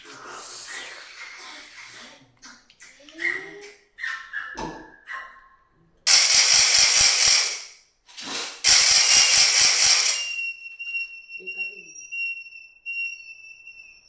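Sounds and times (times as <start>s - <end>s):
rapid ratchet-like rattling: 6.1s - 7.8s, 8.6s - 10.4s
high whistling tone: 8.7s - 14.0s.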